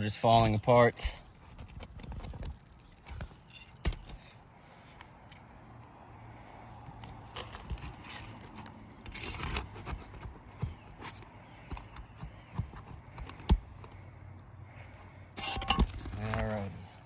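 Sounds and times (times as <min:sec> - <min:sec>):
metal bar scraping shingles: 0:15.4 - 0:16.6.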